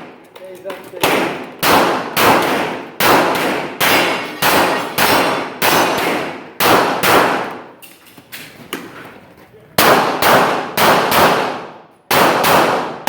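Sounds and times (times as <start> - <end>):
pistol shots echoing: 1.0 - 7.8, 9.8 - 13.0.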